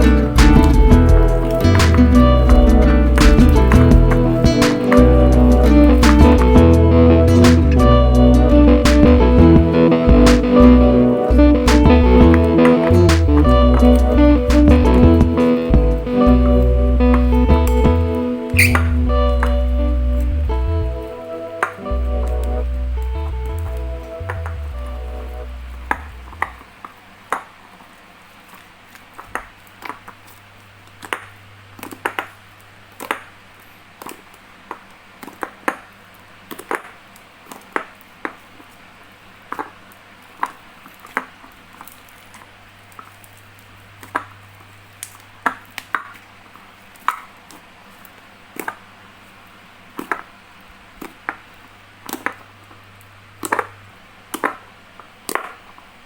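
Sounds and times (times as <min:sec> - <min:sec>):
low steady hum: 0:00.0 - 0:26.6.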